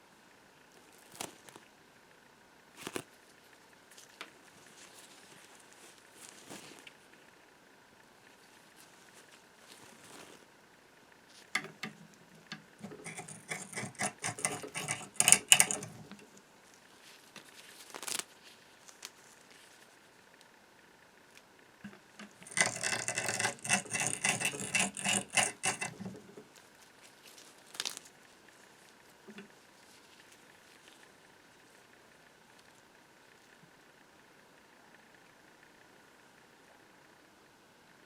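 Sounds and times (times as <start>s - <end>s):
hand-cranked machine clicking and rattling: 11.6s - 16.4s, 21.9s - 26.5s.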